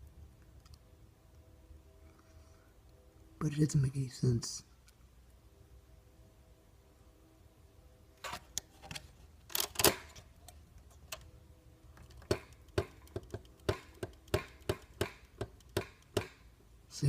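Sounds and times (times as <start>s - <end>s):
typewriter mechanism clicking: 8.9s - 10.2s.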